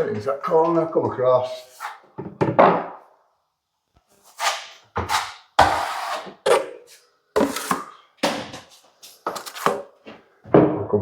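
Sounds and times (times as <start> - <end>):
trowel scraping compound: 1.4 - 2.2, 4.1 - 8.0, 8.6 - 9.9.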